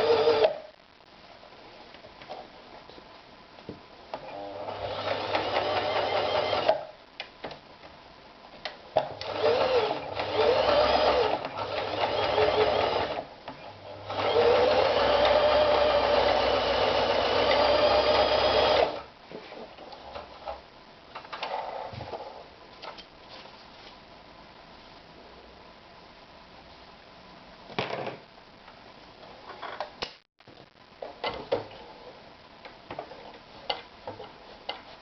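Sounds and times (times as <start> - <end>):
sewing machine stitching: 4.2 - 6.8, 9.1 - 13.2.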